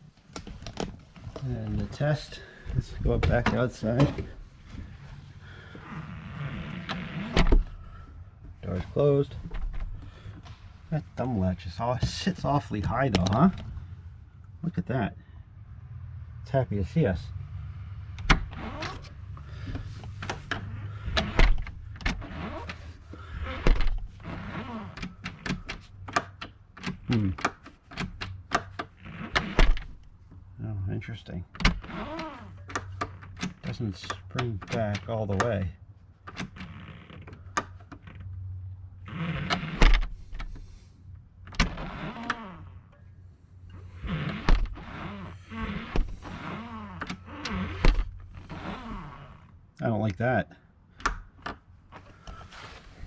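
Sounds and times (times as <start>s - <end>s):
latch mechanism creaking: 2.6s - 4.9s, 5.7s - 8.5s, 12.8s - 13.8s, 18.1s - 30.2s, 31.5s - 35.6s, 36.2s - 40.8s, 41.4s - 43.1s, 43.7s - 49.7s, 51.0s - 53.0s.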